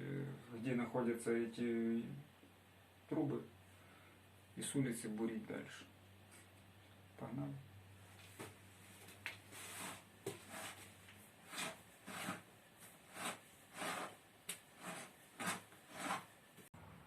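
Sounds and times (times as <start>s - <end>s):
digging tool scraping sandy soil: 13.1s - 14.2s, 14.8s - 16.3s.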